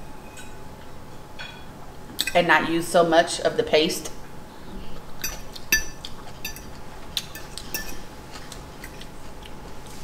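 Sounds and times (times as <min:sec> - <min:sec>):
cutlery clinking against a dish: 0:05.2 - 0:08.1.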